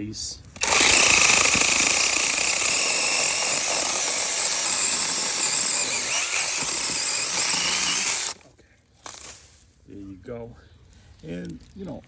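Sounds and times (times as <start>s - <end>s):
chain rasping through wood: 0.6s - 8.4s
electric motor whine: 0.6s - 8.4s.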